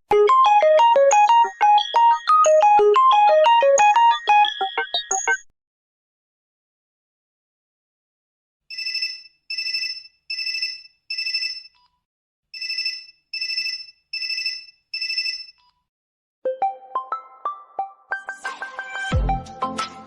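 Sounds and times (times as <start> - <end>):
electronic phone ringtone: 0.1 - 5.5, 8.7 - 11.8, 12.6 - 15.6.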